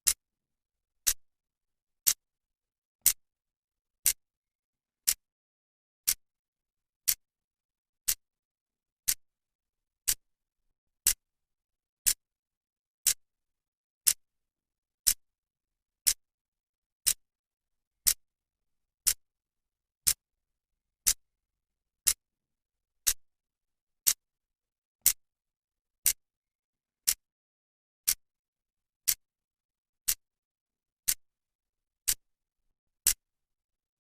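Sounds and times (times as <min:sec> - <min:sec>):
clock ticking: 0:05.0 - 0:05.2.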